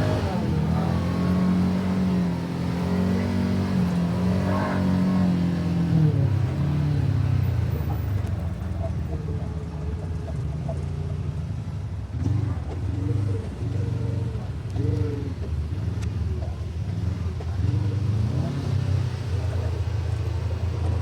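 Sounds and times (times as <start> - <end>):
utility vehicle engine rumbling: 0.0 - 21.0.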